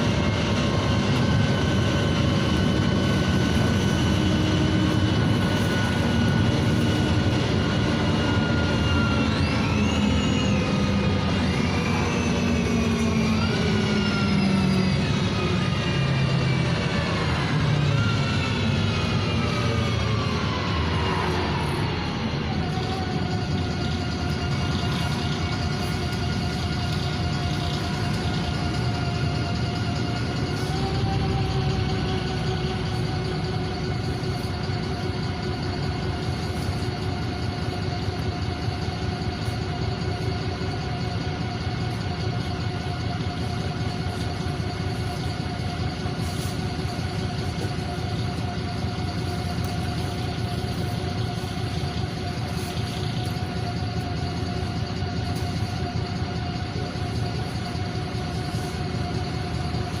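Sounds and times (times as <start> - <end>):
bus engine and road rumble: 0.0 - 60.0
high drivetrain whine: 0.0 - 60.0.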